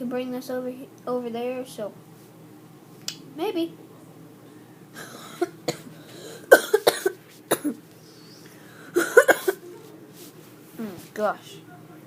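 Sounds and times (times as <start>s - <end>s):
person coughing: 5.0s - 7.8s, 8.9s - 9.7s.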